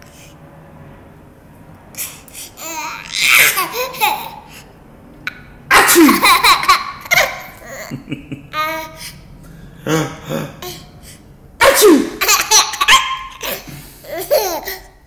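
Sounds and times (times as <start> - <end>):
baby giggling: 2.6 - 4.4, 5.8 - 9.0, 11.8 - 14.9.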